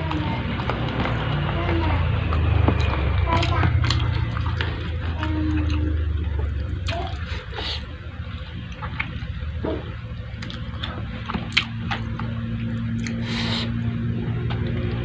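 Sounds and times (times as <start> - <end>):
chewing: 0.0 - 13.8
lip smacks and clicks: 2.2 - 5.9, 10.4 - 13.8.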